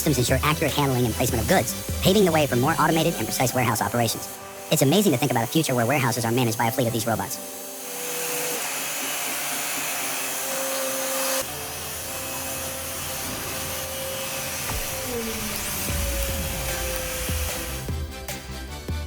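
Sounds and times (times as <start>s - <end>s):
mechanical whirring with whine: 8.6s - 17.9s.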